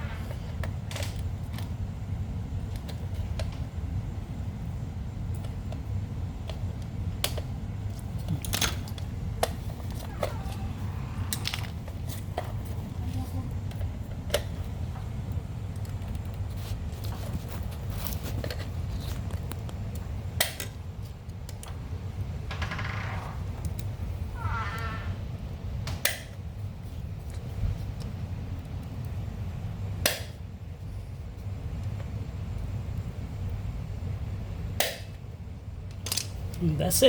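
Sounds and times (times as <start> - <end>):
steady low hum: 0.0 - 37.0
clicks of small parts handled: 35.9 - 36.4.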